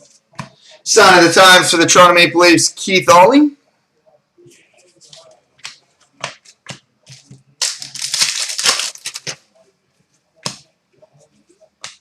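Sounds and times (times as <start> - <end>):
wrapper crinkling rustle: 7.6 - 9.4.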